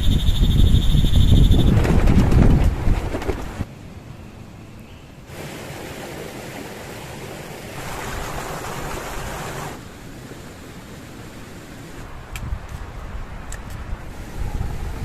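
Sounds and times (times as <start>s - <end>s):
wind buffeting microphone: 0.0s - 4.0s, 7.7s - 15.0s
wind rushing through pines: 0.0s - 15.0s.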